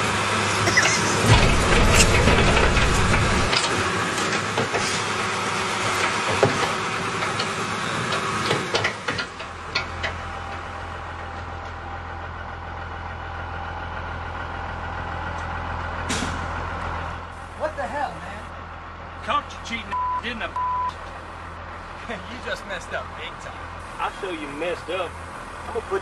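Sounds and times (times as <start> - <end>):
large vehicle engine idling: 0.0 - 26.0
clicks and knocks: 1.3 - 3.7.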